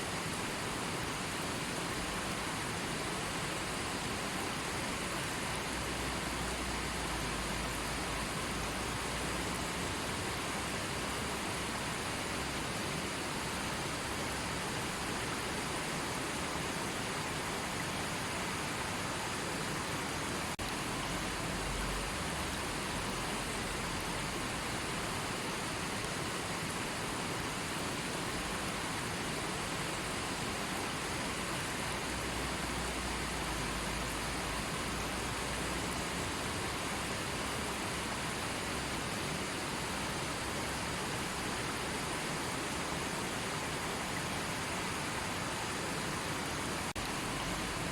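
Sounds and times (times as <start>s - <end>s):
river water rushing: 0.0s - 47.9s.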